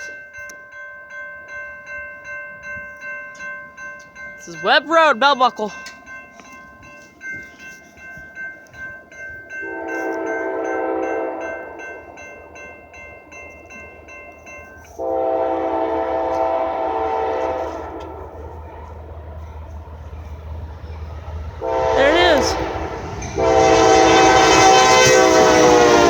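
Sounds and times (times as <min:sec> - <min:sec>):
crossing bell ringing rapidly: 0:00.0 - 0:26.0
low rumble of train: 0:00.0 - 0:26.0
locomotive air horn blasts: 0:09.6 - 0:12.1, 0:14.9 - 0:18.6, 0:21.6 - 0:26.0.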